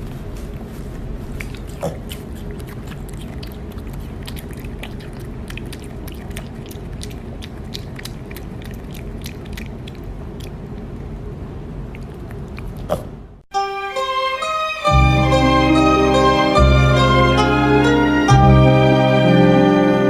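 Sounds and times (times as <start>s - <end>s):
low background noise: 0.0s - 20.0s
chewing with sharp crunches: 1.2s - 11.2s, 11.8s - 13.2s.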